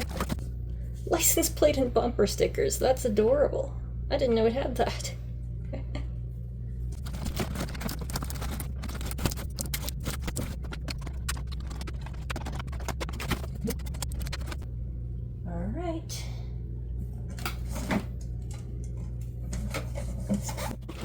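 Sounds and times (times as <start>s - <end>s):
steady low hum: 0.0s - 21.0s
packaging crinkling and rustling: 6.9s - 14.6s.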